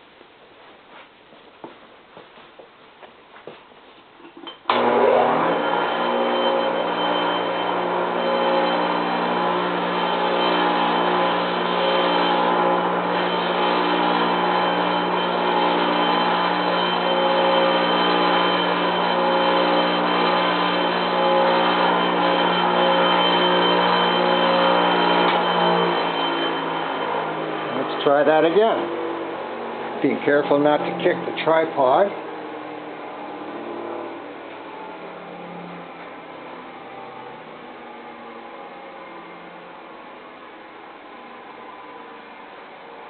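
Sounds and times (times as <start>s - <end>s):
bench grinder motor hum: 4.7s - 38.4s.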